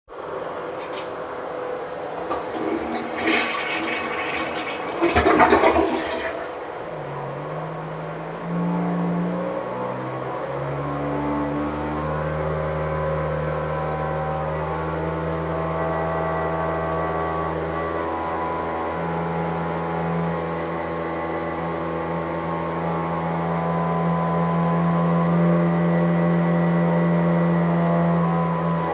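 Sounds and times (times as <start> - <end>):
low humming drone: 1.3 - 28.9
toilet flushing: 2.0 - 7.7.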